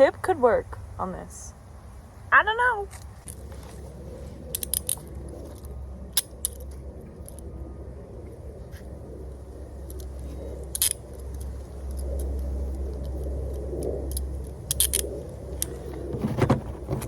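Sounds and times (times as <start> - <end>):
low rumble: 0.6 - 17.0
handcuffs clicking: 4.5 - 7.5, 9.8 - 15.8.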